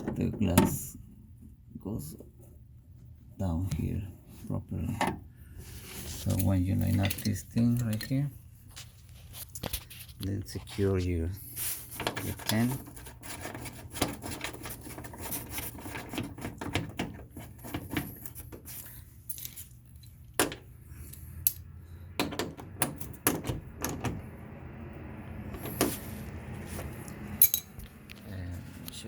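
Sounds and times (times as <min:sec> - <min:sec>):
metallic clicks and rattles of tools: 0:21.0 - 0:21.7, 0:27.4 - 0:27.7.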